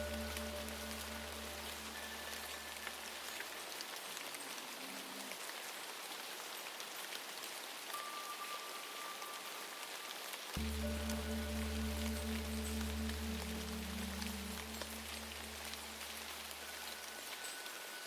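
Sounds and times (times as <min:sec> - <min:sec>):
low music drone: 0:00.0 - 0:02.9, 0:10.6 - 0:16.7
rain patter: 0:00.0 - 0:18.0.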